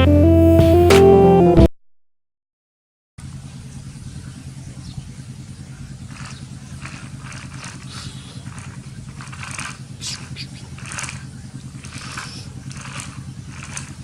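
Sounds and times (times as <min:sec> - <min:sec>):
engine droning: 0:03.2 - 0:14.0.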